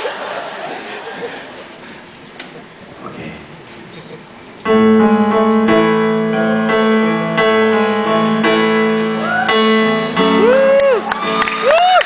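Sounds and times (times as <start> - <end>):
piano chords: 4.3 - 11.8
audience whooping: 9.0 - 12.0.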